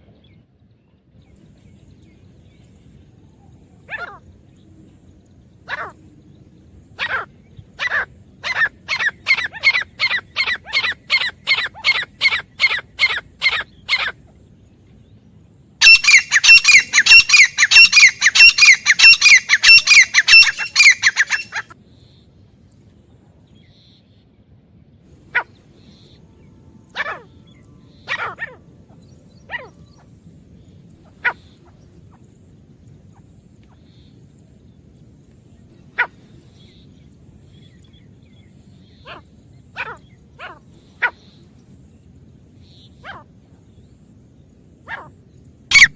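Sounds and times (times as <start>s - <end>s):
francolin calling: 7.0s - 14.2s, 15.8s - 21.8s.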